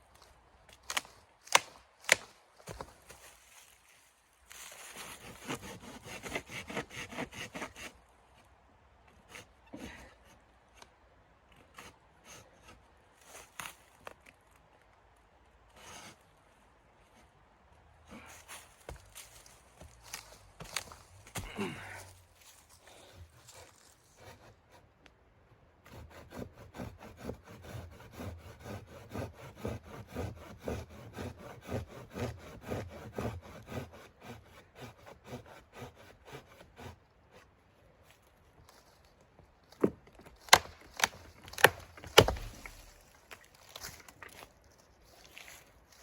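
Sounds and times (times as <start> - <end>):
hand saw cutting wood: 4.8 - 8.0, 9.2 - 10.1, 15.8 - 16.2, 25.8 - 37.5, 40.4 - 43.4
sharp wooden knocks: 40.5 - 42.8.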